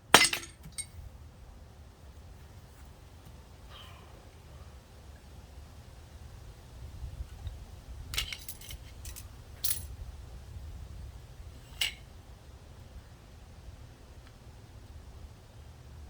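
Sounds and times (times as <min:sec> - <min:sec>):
low steady hum: 0:00.0 - 0:16.0
small metal parts clinking: 0:00.1 - 0:01.0, 0:08.1 - 0:09.9, 0:11.7 - 0:12.0.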